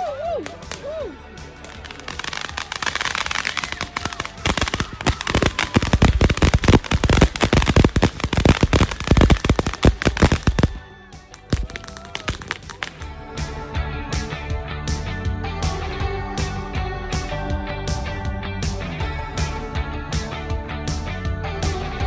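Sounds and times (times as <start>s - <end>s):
firecracker fuse hissing: 0.0s - 13.1s
firecrackers banging: 0.0s - 13.2s.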